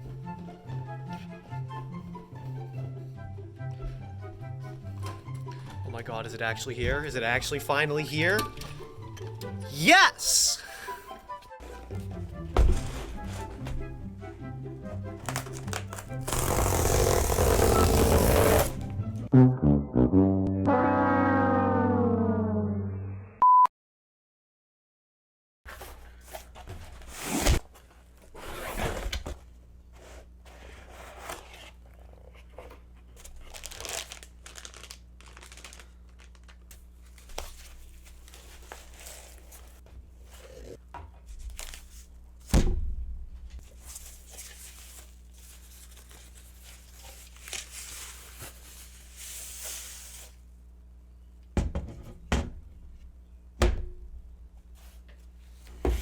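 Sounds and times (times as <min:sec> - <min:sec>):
packaging tearing and crinkling: 0:15.3 - 0:18.7, 0:33.4 - 0:36.7.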